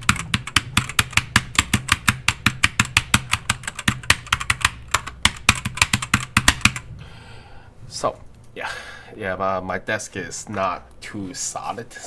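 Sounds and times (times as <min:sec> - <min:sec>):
mechanical keyboard typing: 0:00.0 - 0:06.9.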